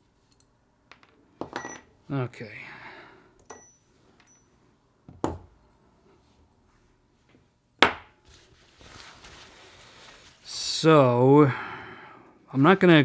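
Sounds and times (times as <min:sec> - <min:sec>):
metal tools clinking: 0:00.2 - 0:01.9, 0:03.4 - 0:04.5.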